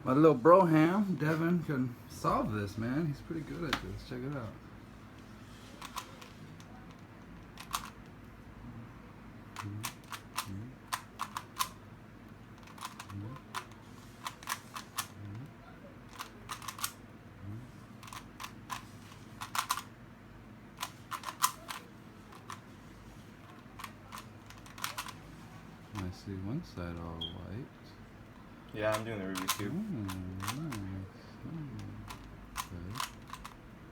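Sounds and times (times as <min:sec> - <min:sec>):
puzzle cube plastic clicks: 0:05.2 - 0:08.2, 0:09.5 - 0:11.8, 0:12.5 - 0:15.5, 0:16.1 - 0:17.0, 0:18.0 - 0:19.9, 0:20.8 - 0:22.7, 0:23.4 - 0:25.2, 0:28.9 - 0:31.0, 0:31.7 - 0:33.6.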